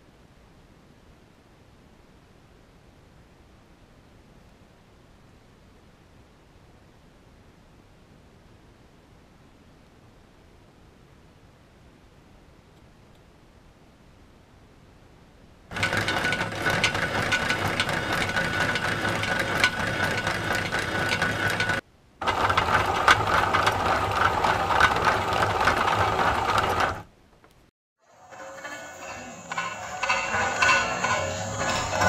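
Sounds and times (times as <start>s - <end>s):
rapid gear clicks: 15.7s - 27.1s
toy bulldozer motor running: 15.7s - 27.1s.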